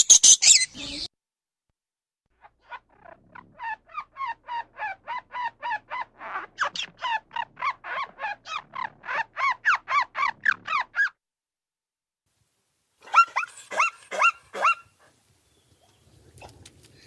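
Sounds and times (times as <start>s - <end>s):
animal calling rapidly: 2.6s - 11.1s.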